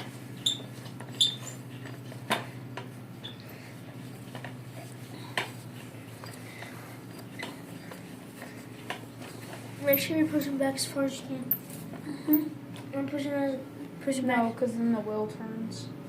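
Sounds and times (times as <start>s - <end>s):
steady low hum: 0.0s - 16.0s
short high squeaks: 0.4s - 2.0s, 3.2s - 3.6s.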